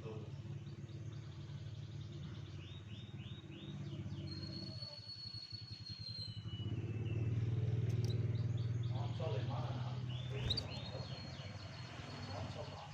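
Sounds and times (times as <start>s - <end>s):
low engine hum: 0.0s - 12.9s
canary singing: 10.0s - 12.6s.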